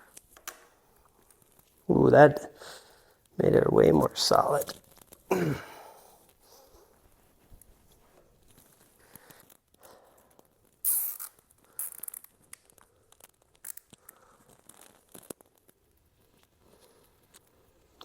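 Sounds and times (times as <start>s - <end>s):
zip tie ratcheting: 10.8s - 15.4s.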